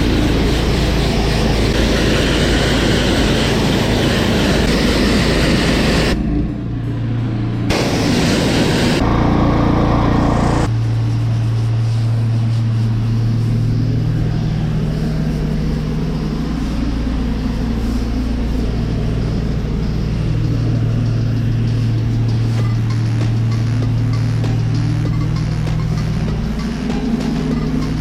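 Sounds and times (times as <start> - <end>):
small gas engine running: 0.0 - 28.0
rushing spray hiss: 7.7 - 9.1.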